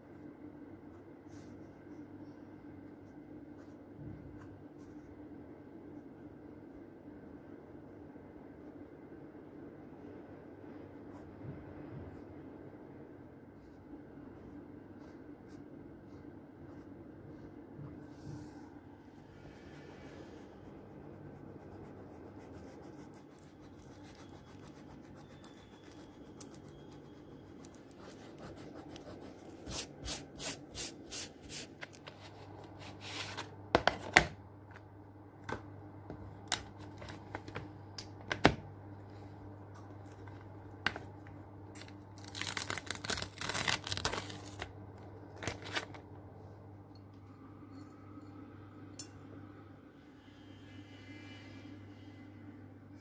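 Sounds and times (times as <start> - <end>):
scratchy drawing strokes: 19.2 - 31.8
paper tearing: 42.2 - 44.6.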